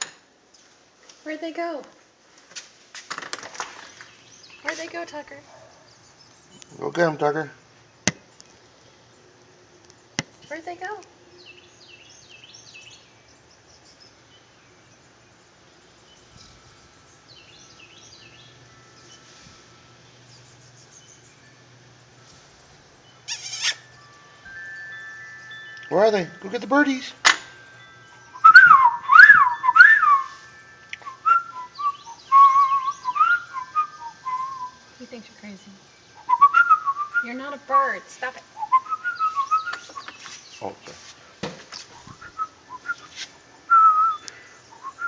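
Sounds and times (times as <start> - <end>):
steady outdoor hiss: 0.0 - 45.0
small birds chirping: 3.6 - 45.0
person whistling bird-like calls: 28.3 - 34.8, 36.2 - 38.0, 38.6 - 40.4, 42.0 - 45.0.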